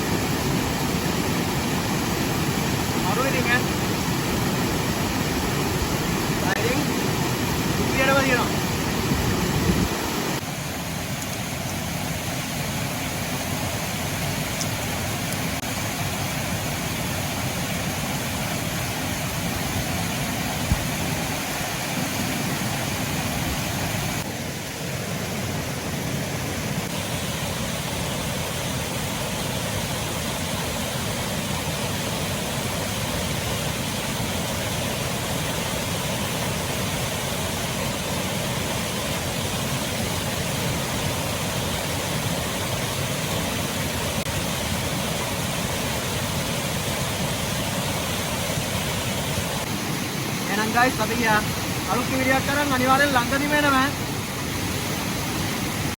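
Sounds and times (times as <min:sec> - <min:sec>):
steady rushing noise: 0:00.0 - 0:11.3, 0:40.3 - 0:55.9.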